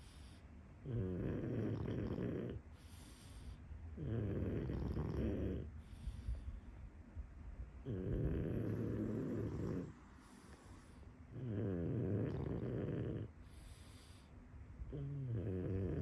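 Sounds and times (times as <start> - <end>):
dog snoring: 0.0 - 6.3, 7.8 - 14.3, 14.9 - 16.0
quiet dog breaths: 0.0 - 16.0.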